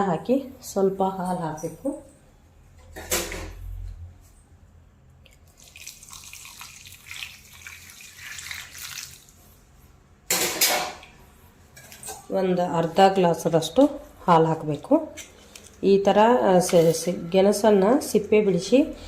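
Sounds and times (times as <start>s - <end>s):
milk pouring into bowl: 5.3s - 9.4s.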